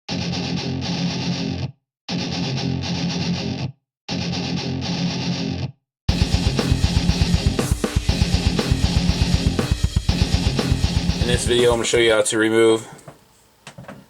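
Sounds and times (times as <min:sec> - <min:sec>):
distorted electric guitar chord: 0:00.1 - 0:03.6, 0:06.1 - 0:12.2
drums: 0:06.1 - 0:12.2.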